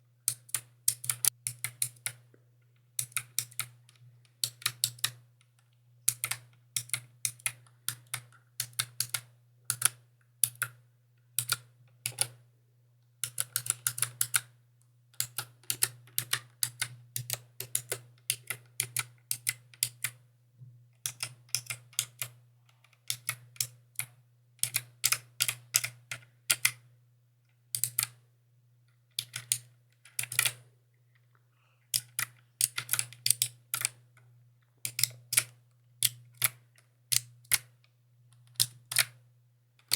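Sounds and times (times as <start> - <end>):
mechanical keyboard typing: 0.3 - 2.2, 3.0 - 3.8, 4.4 - 5.2, 6.1 - 10.8, 11.4 - 12.4, 13.2 - 14.5, 15.2 - 20.2, 21.0 - 22.4, 23.0 - 26.9, 27.7 - 28.2, 29.2 - 30.6, 32.0 - 34.0, 34.8 - 37.7, 38.3 - 39.2.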